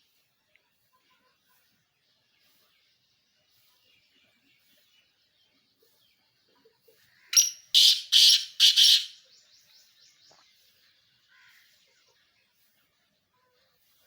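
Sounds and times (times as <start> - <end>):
faint rapid repeated bird notes: 7.1 - 11.8
pheasant calling harshly: 7.2 - 9.2.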